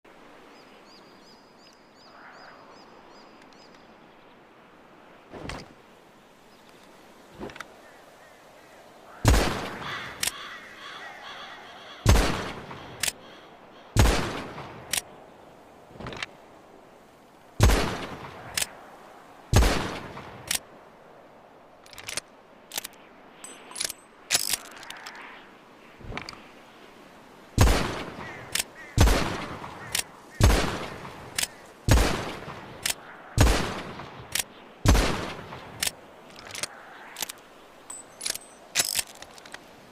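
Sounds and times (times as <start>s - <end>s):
faint clicks: 3.3s - 3.9s, 12.9s - 13.3s, 21.8s - 25.3s, 30.8s - 31.7s, 35.3s - 39.8s
revolver gunshots: 33.4s - 34.0s, 34.9s - 35.6s.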